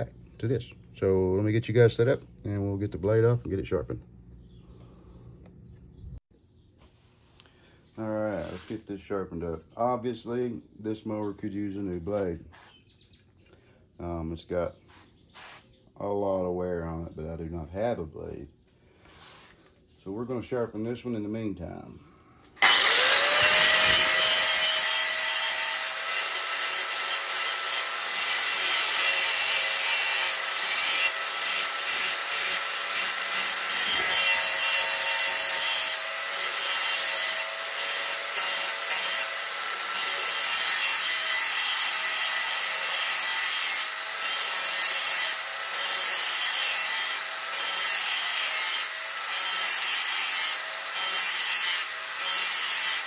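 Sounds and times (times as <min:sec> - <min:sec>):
grinder grinding metal blade: 0:22.6 - 0:53.0.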